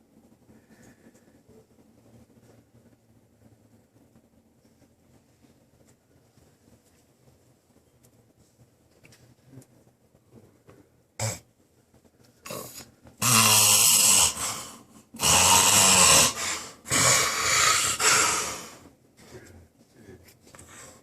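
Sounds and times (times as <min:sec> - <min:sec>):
person snoring loudly: 0:12.5 - 0:18.8.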